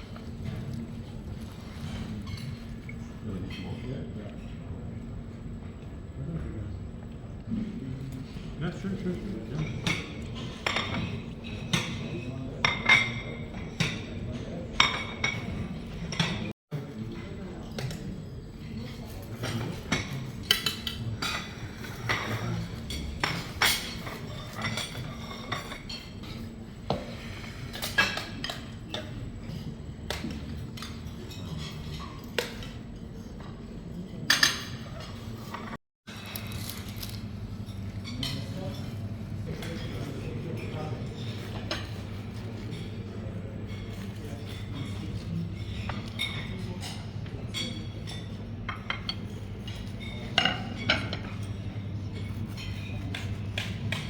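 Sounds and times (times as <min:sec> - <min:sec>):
cutlery and plates clinking: 0:09.4 - 0:16.5, 0:18.8 - 0:54.0.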